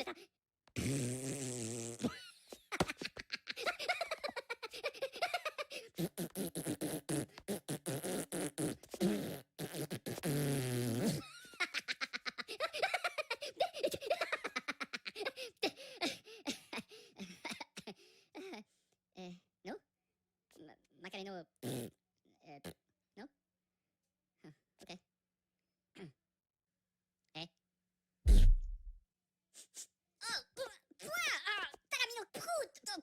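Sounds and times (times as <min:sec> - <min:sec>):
cartoon characters laughing: 0:02.1 - 0:06.0, 0:11.3 - 0:16.2.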